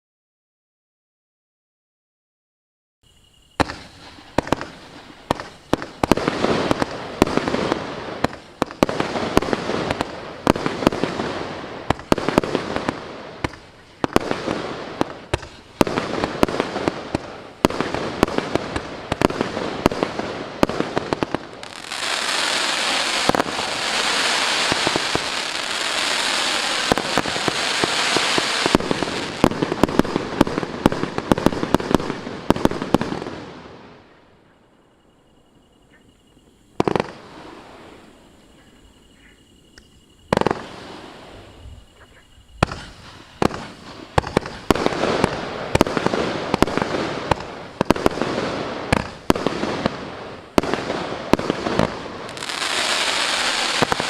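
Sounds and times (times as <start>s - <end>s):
firework cake firing: 3.5s - 34.0s, 42.6s - 54.0s.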